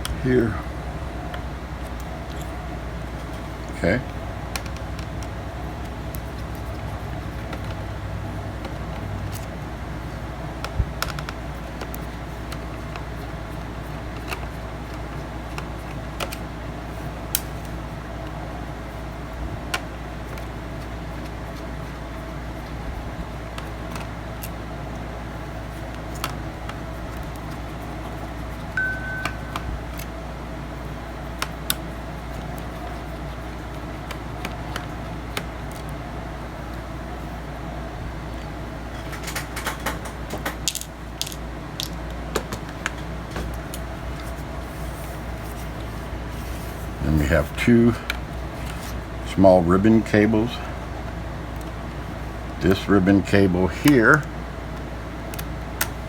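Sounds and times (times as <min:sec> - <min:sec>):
background hum: 0:00.0 - 0:56.0
short high beep: 0:28.8 - 0:29.8.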